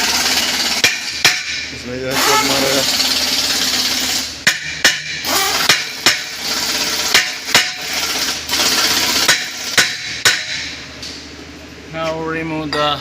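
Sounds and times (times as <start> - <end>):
workshop noise hiss: 0.1 - 13.0
hammer striking metal wheel hub: 0.8 - 1.7, 4.4 - 6.4, 7.1 - 7.9, 9.2 - 10.8.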